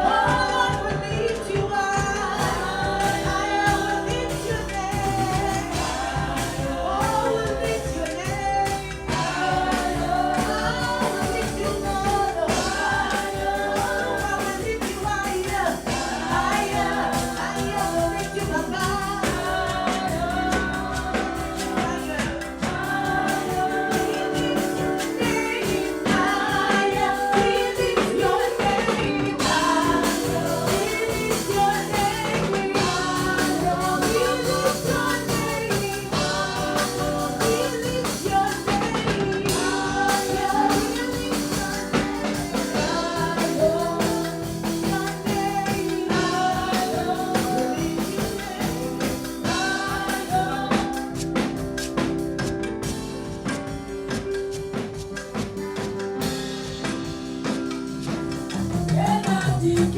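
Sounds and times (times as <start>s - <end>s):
gospel singing over instruments: 0.0s - 59.9s
steady drum beat: 0.0s - 59.9s.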